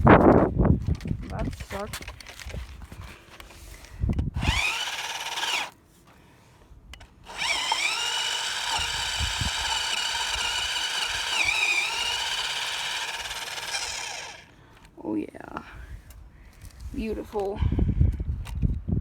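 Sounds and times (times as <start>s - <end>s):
electric motor whining: 4.4s - 5.7s, 7.3s - 14.5s.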